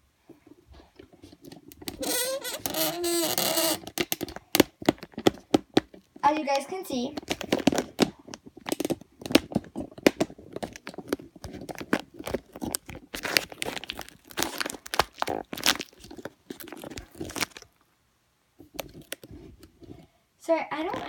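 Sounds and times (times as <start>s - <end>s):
crinkling handling noise: 0.0s - 21.0s.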